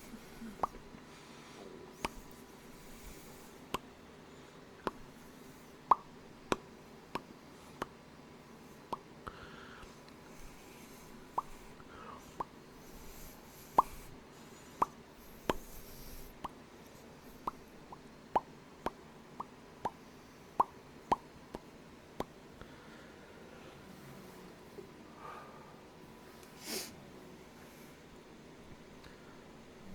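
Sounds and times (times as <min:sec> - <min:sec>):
person making popping clicks: 0:00.4 - 0:00.8, 0:05.9 - 0:07.9, 0:11.4 - 0:11.6, 0:17.4 - 0:20.0, 0:20.6 - 0:22.3.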